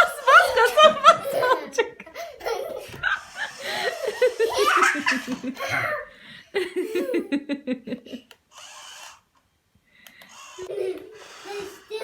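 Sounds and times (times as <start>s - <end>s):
hearty laughter: 0.0s - 8.3s.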